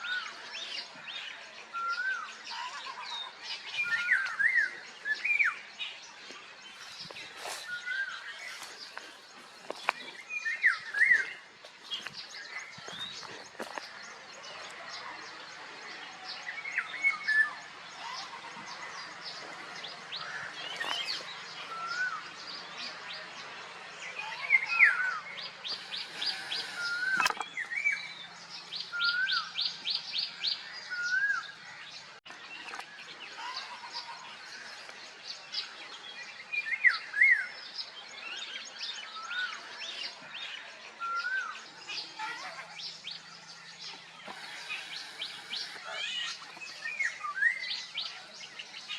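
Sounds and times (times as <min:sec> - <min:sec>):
songbirds chirping and singing: 0:00.0 - 0:48.9
rapid high bird trills: 0:25.6 - 0:27.4, 0:44.2 - 0:46.4.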